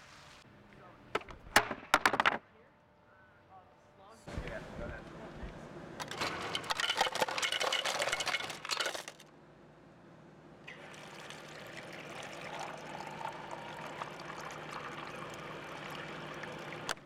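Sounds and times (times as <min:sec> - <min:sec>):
running water stream: 0:10.7 - 0:17.0
water splashing with sharp clicks: 0:16.2 - 0:17.0.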